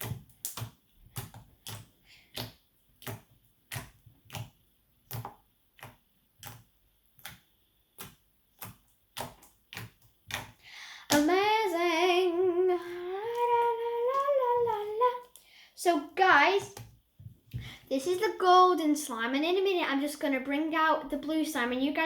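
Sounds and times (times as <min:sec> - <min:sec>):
girl humming: 0:11.4 - 0:15.3.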